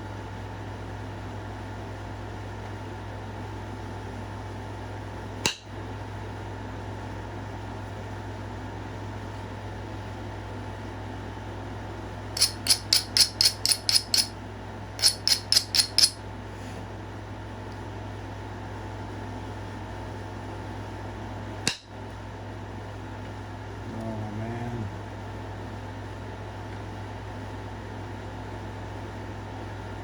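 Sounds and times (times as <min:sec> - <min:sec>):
fan hum: 0:00.0 - 0:30.0
stone clicking on stone: 0:12.4 - 0:14.3, 0:15.0 - 0:16.2.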